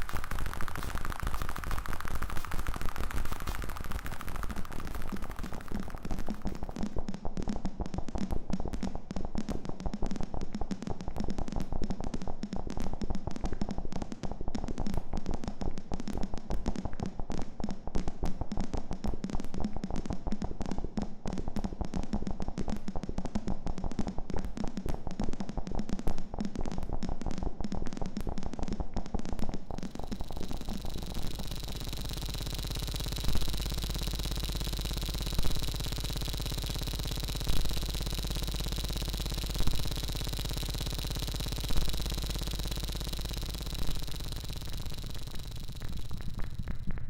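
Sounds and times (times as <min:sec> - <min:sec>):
steady low hum: 0:00.0 - 0:07.2, 0:29.7 - 0:47.0
electronic crackles and pops: 0:00.0 - 0:47.0.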